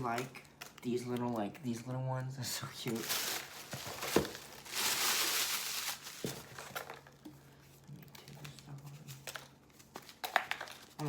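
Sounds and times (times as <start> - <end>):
wrapping rustling and crinkling: 2.4 - 11.0.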